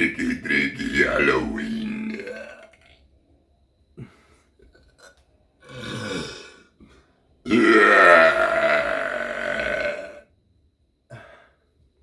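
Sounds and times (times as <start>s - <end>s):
person burping: 0.0s - 3.0s, 4.8s - 6.7s, 7.5s - 10.3s.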